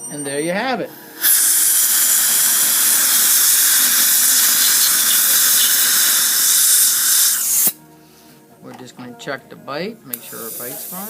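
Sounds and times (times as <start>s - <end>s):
dental suction hissing: 0.9s - 7.8s, 10.1s - 11.0s.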